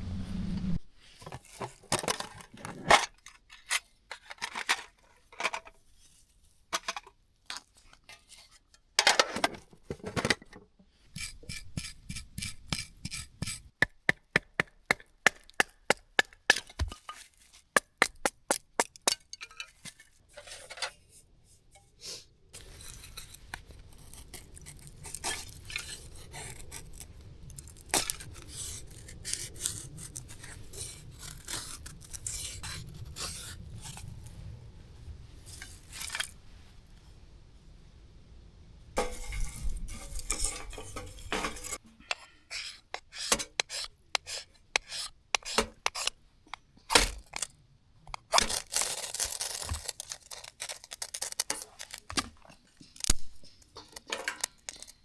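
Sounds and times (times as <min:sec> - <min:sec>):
cookware and utensils clinking: 0:39.0 - 0:42.5.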